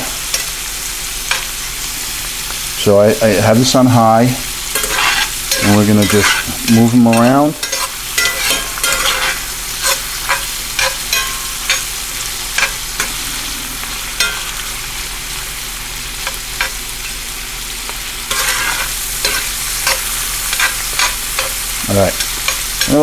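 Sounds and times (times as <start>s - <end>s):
meat sizzling in a pan: 0.0s - 23.0s
stirring clicks and scrapes: 4.7s - 11.9s.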